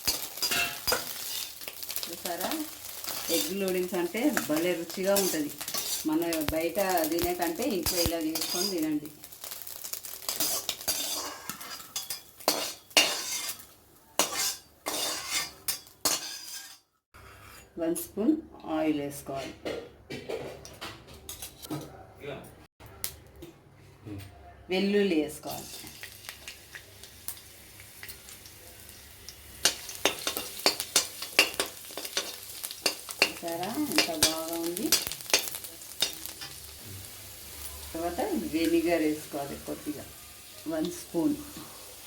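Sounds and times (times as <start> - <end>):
metal spoon scraping metal pan: 0.0 - 1.6, 4.9 - 6.4, 7.8 - 9.0, 10.3 - 13.6, 14.2 - 17.8, 25.5 - 26.0
garlic sizzling in hot oil: 0.0 - 16.8, 25.4 - 42.0.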